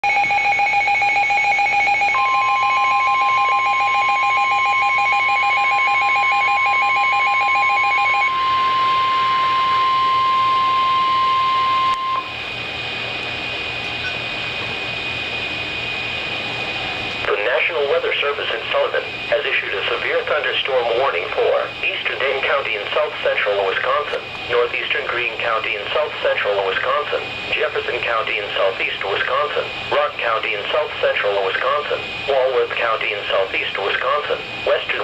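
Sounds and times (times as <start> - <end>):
faint high whine: 0.0 - 35.0
radio hiss: 17.2 - 35.0.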